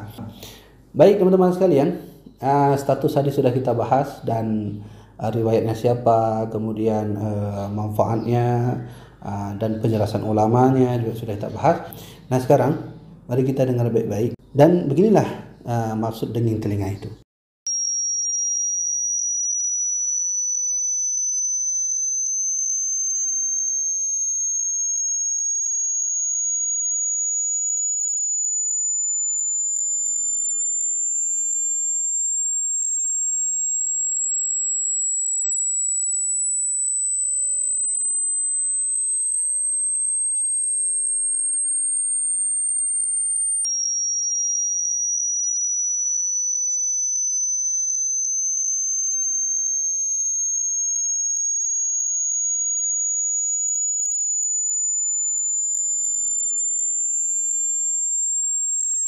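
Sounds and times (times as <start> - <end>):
high-pitched electronic tone: 17.7 - 59.0.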